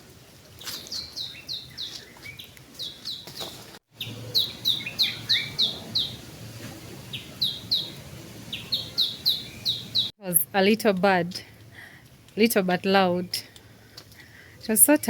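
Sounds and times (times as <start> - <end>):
small bird singing: 0.6 - 6.3, 7.0 - 10.2.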